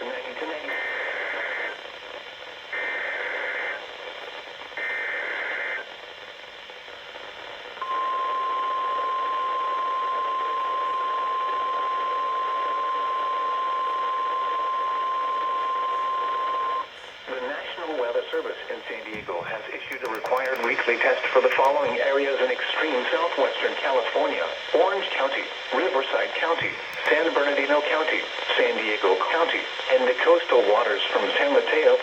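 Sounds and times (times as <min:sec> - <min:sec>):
radio hiss: 0:00.0 - 0:32.0.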